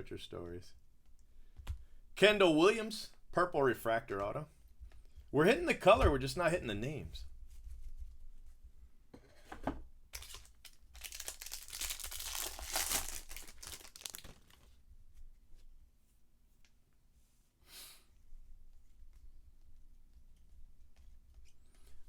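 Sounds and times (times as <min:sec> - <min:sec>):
foil wrapper tearing and crinkling: 0:10.2 - 0:14.7.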